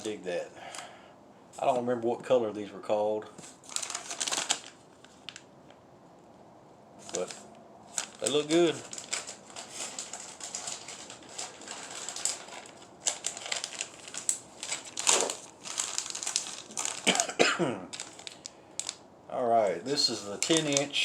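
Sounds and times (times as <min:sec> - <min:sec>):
plastic packaging crinkling: 0:03.4 - 0:05.5, 0:07.0 - 0:19.1, 0:19.9 - 0:21.0.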